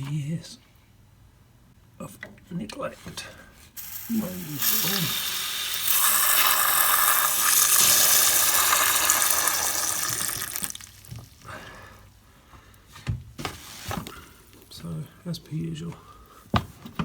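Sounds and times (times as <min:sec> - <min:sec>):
water gushing from drain: 0:03.8 - 0:11.2.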